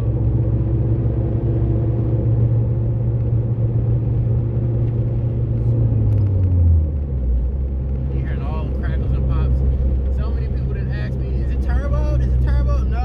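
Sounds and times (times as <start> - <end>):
car engine droning: 0.0 - 13.0.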